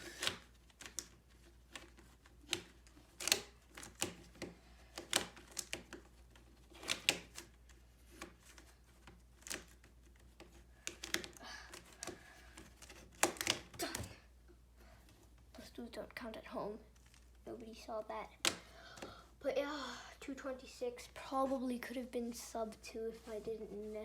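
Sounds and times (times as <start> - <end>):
puzzle cube clicking as turned: 0.0 - 6.1, 6.7 - 8.6, 9.4 - 14.0.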